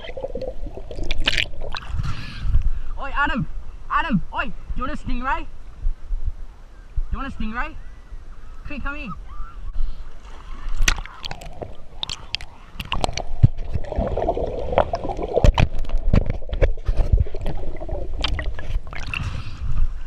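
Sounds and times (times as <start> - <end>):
water bubbling: 0.0 - 2.3, 10.4 - 19.8
water sloshing and gurgling: 0.0 - 2.7, 10.1 - 20.0.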